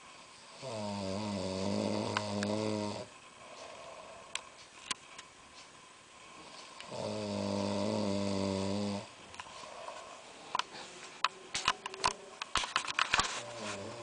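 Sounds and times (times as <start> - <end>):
person snoring: 0.5 - 4.4, 6.8 - 10.4, 13.4 - 14.0.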